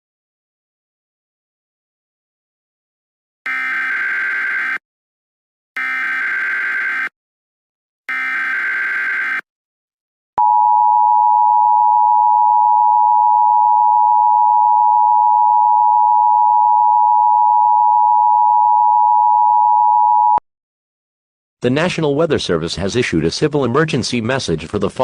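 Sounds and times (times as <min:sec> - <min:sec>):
harsh warbling data buzz: 0:03.5 - 0:04.8, 0:05.8 - 0:07.1, 0:08.1 - 0:09.4.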